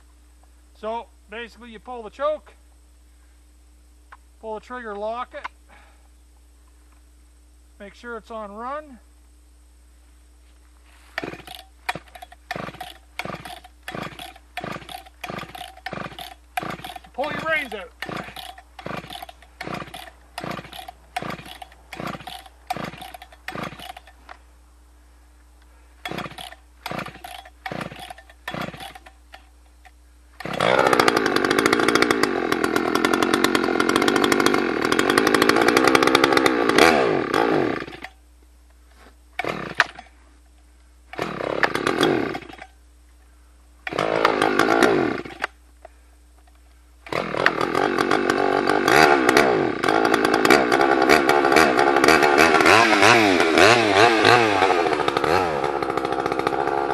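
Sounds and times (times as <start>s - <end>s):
chainsaw engine running: 10.9s - 24.4s, 25.8s - 29.5s, 30.3s - 38.2s, 39.4s - 40.2s, 41.1s - 42.8s, 43.8s - 45.6s, 47.0s - 56.9s
starter cord pulls: 11.2s - 24.4s, 26.0s - 29.5s, 30.4s - 38.2s, 39.4s - 40.1s, 41.1s - 42.7s, 47.0s - 56.9s.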